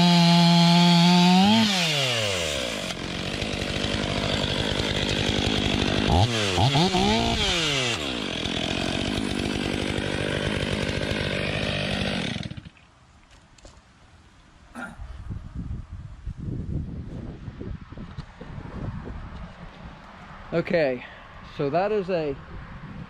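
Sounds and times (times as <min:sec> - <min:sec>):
chainsaw running at high speed: 0:00.0 - 0:12.7.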